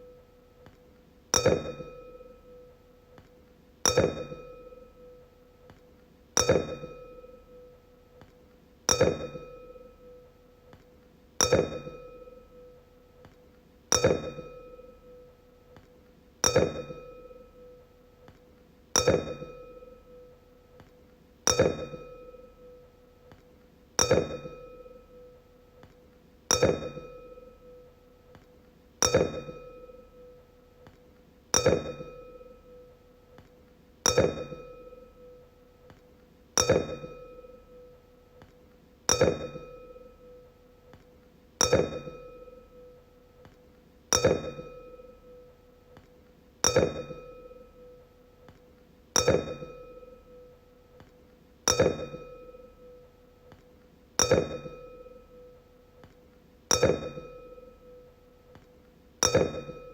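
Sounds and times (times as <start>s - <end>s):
wine glass tapped ringing: 1.4s - 2.7s, 3.9s - 5.2s, 6.4s - 7.7s, 8.9s - 10.2s, 11.4s - 12.8s, 13.9s - 15.3s, 16.4s - 17.8s, 19.0s - 20.3s, 21.5s - 22.8s, 24.0s - 25.3s, 26.5s - 27.9s, 29.0s - 30.4s, 31.6s - 32.9s, 34.1s - 35.4s, 36.6s - 37.9s, 39.1s - 40.5s, 41.6s - 43.0s, 44.1s - 45.5s, 46.6s - 48.0s, 49.2s - 50.5s, 51.7s - 53.1s, 54.2s - 55.6s, 56.7s - 58.0s, 59.2s - 59.9s.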